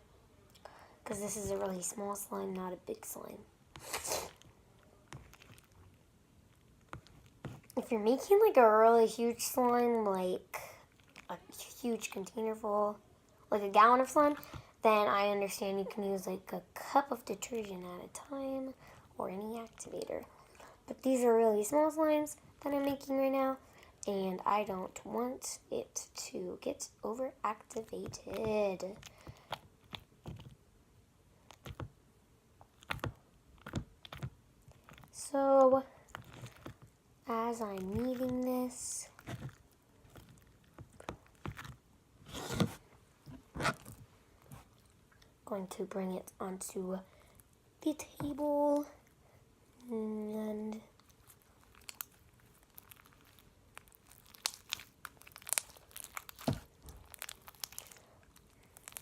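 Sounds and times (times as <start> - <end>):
slime kneaded by hand: 1.1 - 12.4, 26.6 - 45.3, 50.6 - 59.0.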